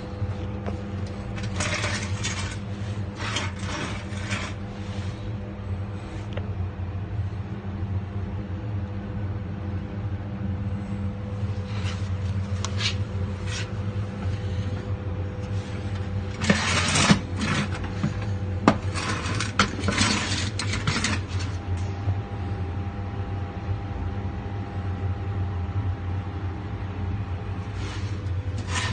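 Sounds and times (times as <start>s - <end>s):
knocks and scraping: 0.4s - 5.3s, 11.6s - 21.8s, 27.8s - 28.9s.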